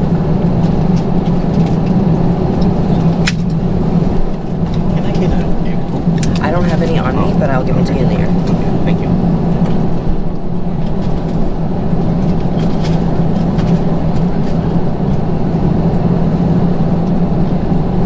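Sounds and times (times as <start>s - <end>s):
aircraft cabin rumble: 0.0s - 18.0s
steady hum: 1.6s - 10.4s.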